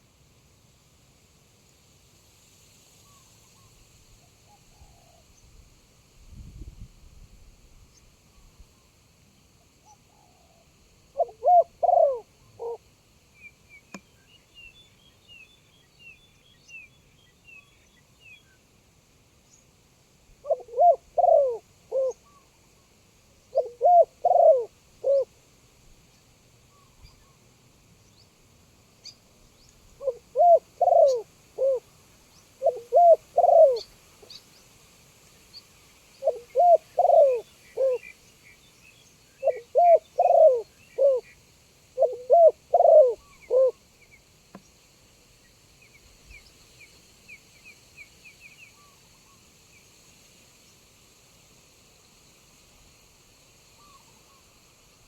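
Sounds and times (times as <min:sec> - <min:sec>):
dove cooing: 0:10.2 - 0:12.9, 0:20.4 - 0:22.4, 0:23.5 - 0:25.4, 0:30.0 - 0:31.9, 0:32.6 - 0:34.4, 0:36.2 - 0:38.1, 0:39.4 - 0:41.4, 0:42.0 - 0:43.8.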